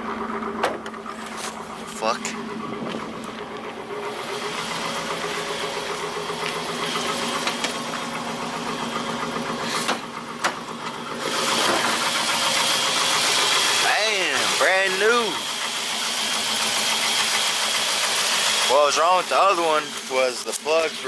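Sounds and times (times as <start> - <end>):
pickup engine idling: 0.0 - 21.0.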